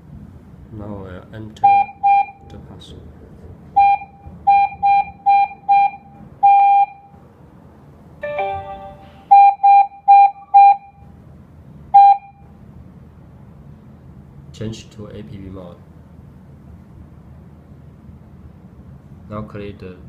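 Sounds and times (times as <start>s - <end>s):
falling electronic tone: 8.2s - 9.8s.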